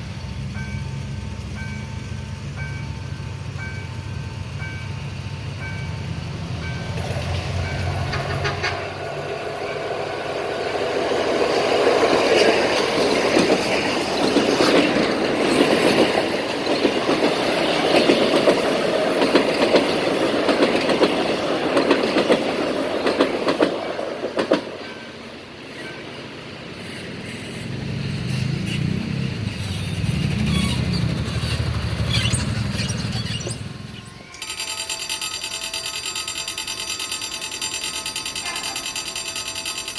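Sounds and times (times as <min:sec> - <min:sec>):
train wheels clattering: 0:06.5 - 0:25.2, 0:28.5 - 0:39.9.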